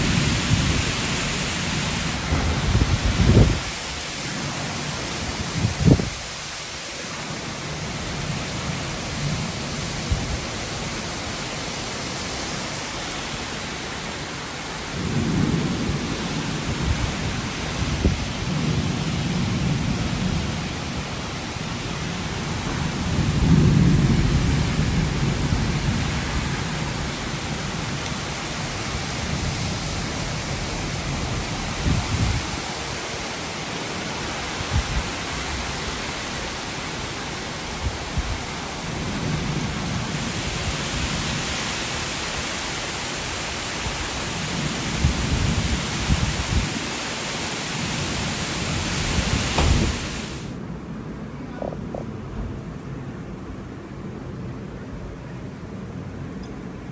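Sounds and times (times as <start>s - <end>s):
rolling thunder: 0.0s - 6.2s, 14.9s - 33.1s, 47.8s - 50.6s
steady rain: 0.0s - 56.9s.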